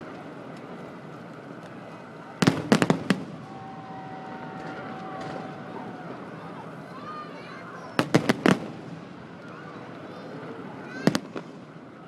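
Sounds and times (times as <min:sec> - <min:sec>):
steady background noise: 0:00.0 - 0:12.0
fireworks bangs: 0:02.3 - 0:06.3, 0:07.9 - 0:09.3, 0:10.9 - 0:11.8.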